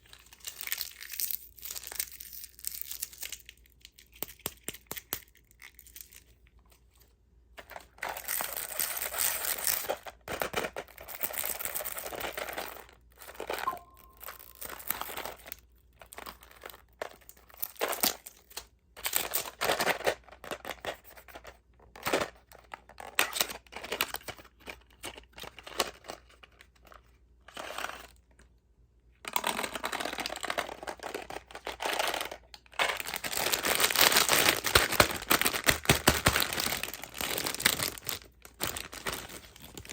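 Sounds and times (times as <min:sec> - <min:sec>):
candy packaging crinkling: 0:00.0 - 0:28.4, 0:29.2 - 0:39.9.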